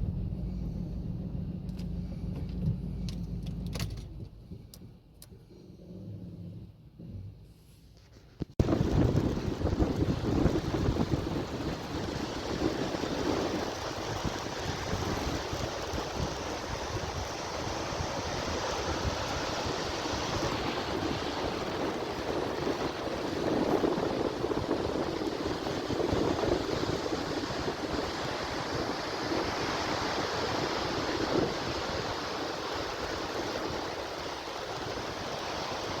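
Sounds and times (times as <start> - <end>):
surf breaking on shore: 8.6 - 36.0
wind buffeting microphone: 8.6 - 36.0.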